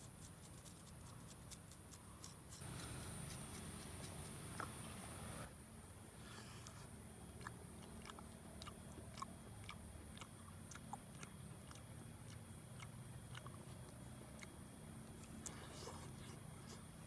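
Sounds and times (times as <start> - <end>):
low steady hum: 0.0 - 17.0
person chewing food: 6.6 - 17.0.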